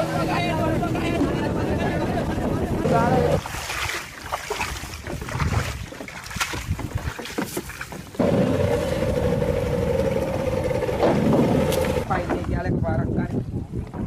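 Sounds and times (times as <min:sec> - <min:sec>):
boat motor running: 0:00.0 - 0:04.2, 0:06.7 - 0:12.6.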